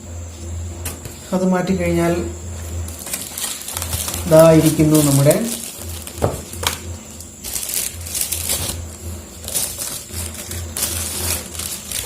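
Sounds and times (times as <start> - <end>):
packaging rustling and scraping: 2.5 - 12.0.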